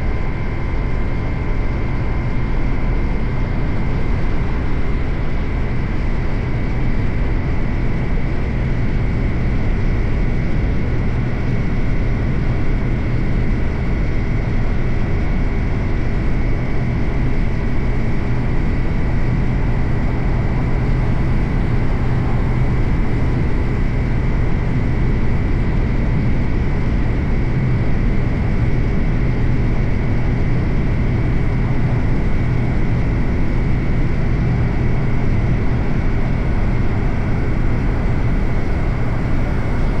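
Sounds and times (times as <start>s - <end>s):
steady rushing noise: 16.4s - 40.0s.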